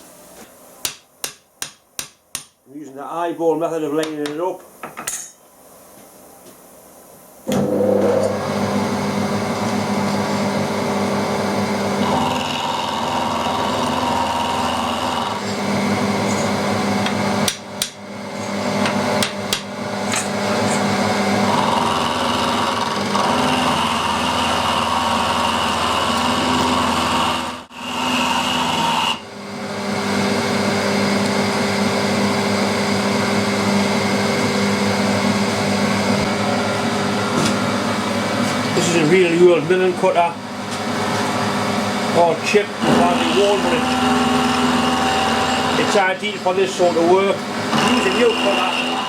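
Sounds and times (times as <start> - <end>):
milling machine hum: 7.4 - 49.0
milling cutter ringing tone: 42.8 - 49.0.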